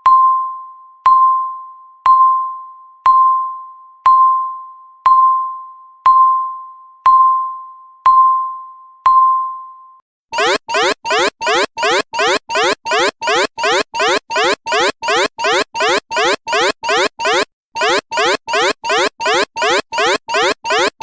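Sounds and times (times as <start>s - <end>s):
countdown timer beeps: 10.4s - 21.0s.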